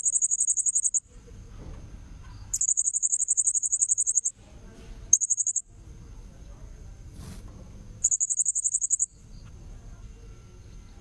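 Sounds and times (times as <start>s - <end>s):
shrill parrot chirping: 0.0s - 1.0s, 2.5s - 4.3s, 5.1s - 5.6s, 8.0s - 9.1s.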